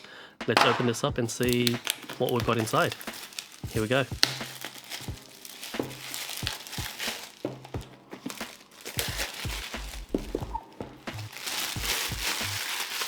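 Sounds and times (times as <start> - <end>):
packaging crinkling and rustling: 0.6 - 13.0.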